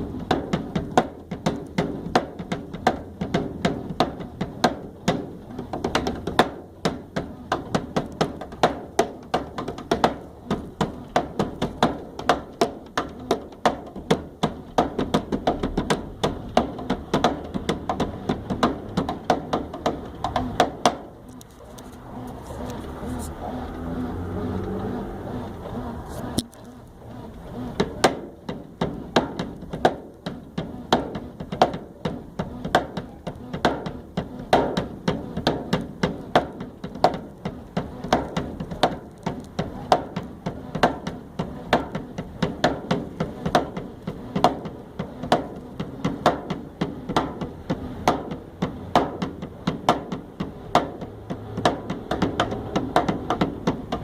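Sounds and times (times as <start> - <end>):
hand percussion taps and knocks: 27.8 - 54.0.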